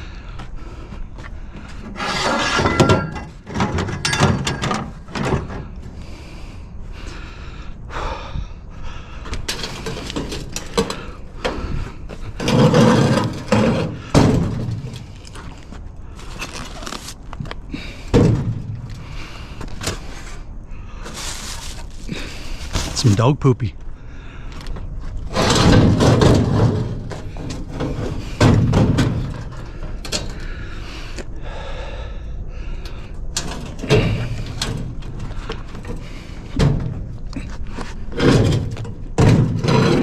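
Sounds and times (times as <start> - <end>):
scrap metal knocking and clattering: 1.8 - 5.8, 9.4 - 15.6, 25.3 - 30.5, 33.4 - 40.0.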